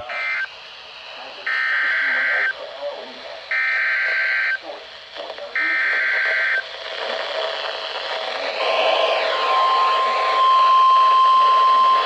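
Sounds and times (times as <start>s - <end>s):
receiver hiss: 0.0s - 12.0s
steady alarm tone: 1.5s - 2.6s, 8.6s - 12.0s.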